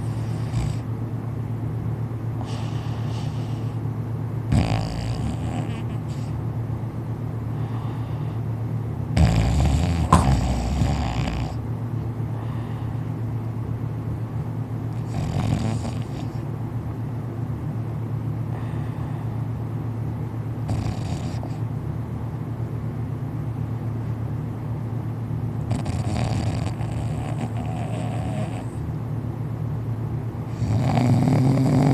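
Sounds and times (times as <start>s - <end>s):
steady low hum: 0.0s - 31.9s
man snoring: 9.2s - 11.6s, 15.0s - 16.3s, 25.7s - 28.7s, 30.6s - 31.9s.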